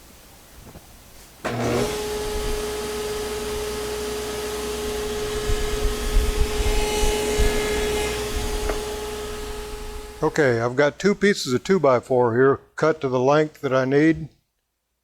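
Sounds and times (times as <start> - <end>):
table saw whining: 1.4 - 11.0.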